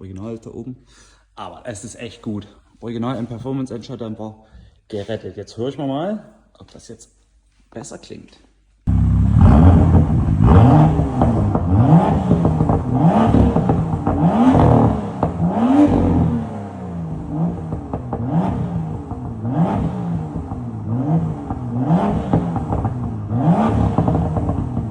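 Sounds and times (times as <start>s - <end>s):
car engine revving in blips: 8.9s - 24.9s.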